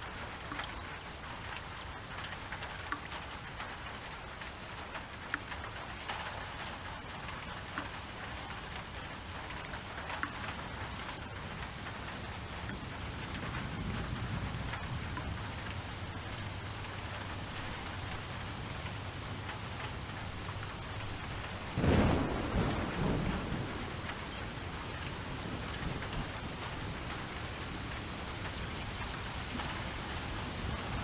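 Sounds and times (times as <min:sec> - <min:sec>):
steady rainfall: 0:00.0 - 0:31.0
thunder clap rumbling: 0:20.4 - 0:28.2.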